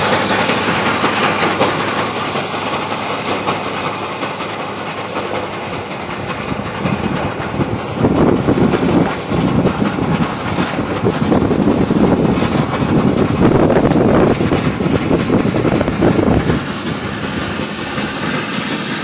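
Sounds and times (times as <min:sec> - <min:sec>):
baler mechanical clatter: 0:00.0 - 0:19.0
tractor engine: 0:00.0 - 0:19.0.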